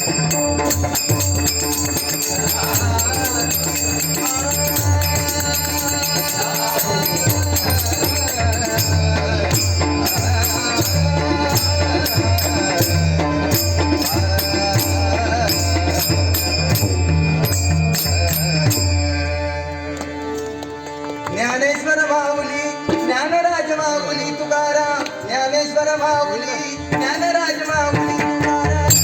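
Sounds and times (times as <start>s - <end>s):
drum beating steady rhythm: 0.0s - 19.2s, 26.9s - 29.0s.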